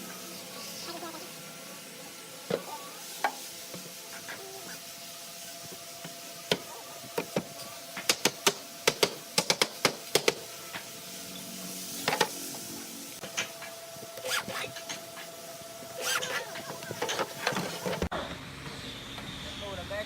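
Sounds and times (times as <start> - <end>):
carpentry knocks and clicks: 7.2 - 10.4.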